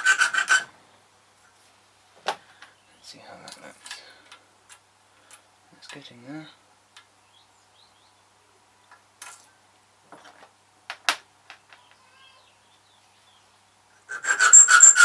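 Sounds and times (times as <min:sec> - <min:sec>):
file cutting metal key: 0:14.1 - 0:15.0.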